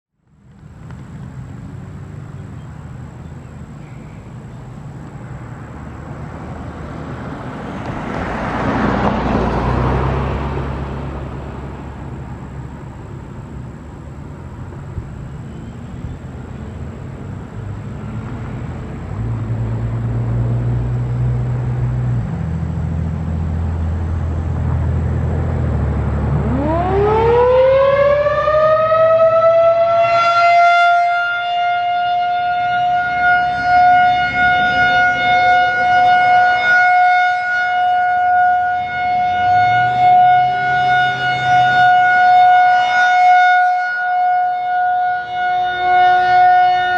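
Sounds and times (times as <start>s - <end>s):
warning siren wailing: 26.2s - 46.9s.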